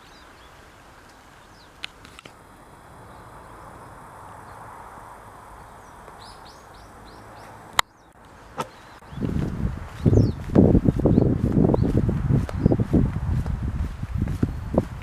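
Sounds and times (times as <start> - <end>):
bird chirps: 0.0 - 1.8, 5.6 - 12.9.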